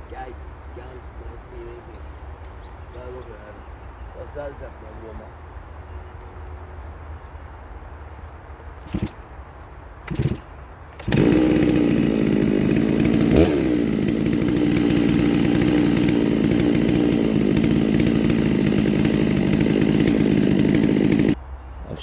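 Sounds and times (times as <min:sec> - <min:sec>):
chainsaw starting and running: 0:08.8 - 0:09.2, 0:10.1 - 0:21.4.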